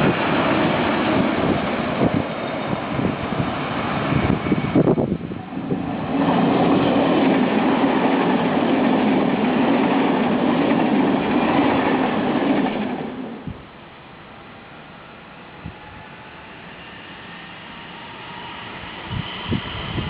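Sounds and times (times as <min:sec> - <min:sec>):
train wheels rolling on rails: 0:00.0 - 0:20.0.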